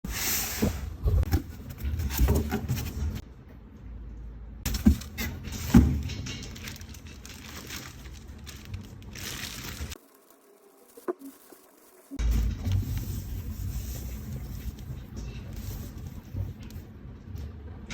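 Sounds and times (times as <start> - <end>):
packaging rustling: 4.7 - 14.9.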